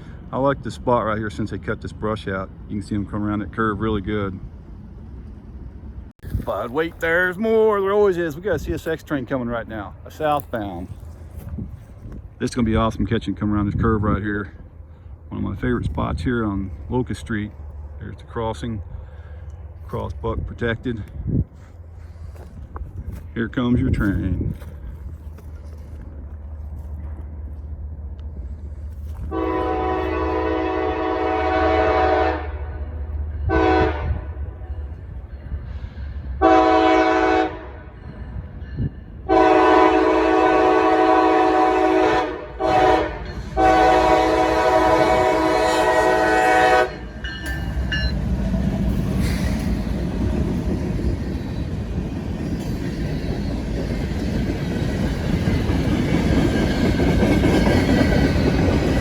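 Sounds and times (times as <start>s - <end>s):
train rumble and wheel clatter: 0.0s - 59.0s
locomotive air horn blasts: 29.2s - 34.6s, 36.4s - 38.0s, 39.3s - 48.1s.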